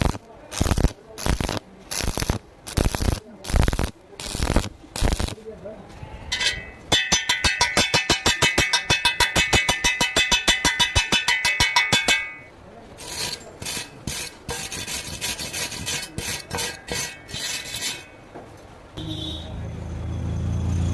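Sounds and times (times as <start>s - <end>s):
rasping scraping strokes: 6.2s - 18.2s.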